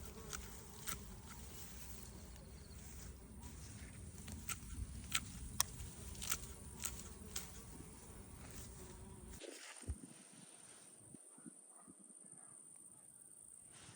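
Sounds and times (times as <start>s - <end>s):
faint insect buzzing: 0.0s - 11.2s.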